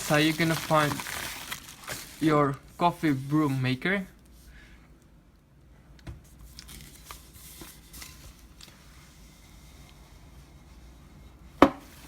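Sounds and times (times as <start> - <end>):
packaging rustling: 0.0 - 3.5.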